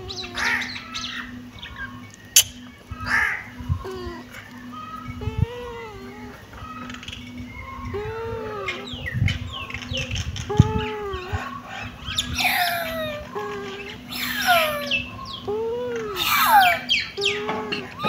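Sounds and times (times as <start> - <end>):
faint steady hum: 0.0 - 18.0
kittens mewing: 10.4 - 18.0.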